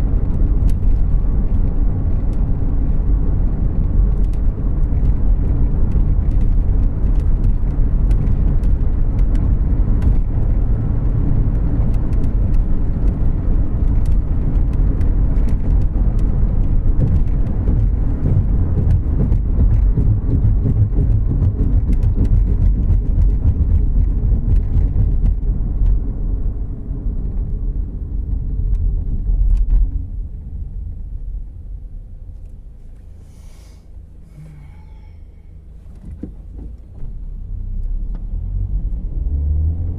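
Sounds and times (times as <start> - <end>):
car engine and tyre rumble: 0.0 - 39.9
small clicks and rattles: 11.5 - 26.0.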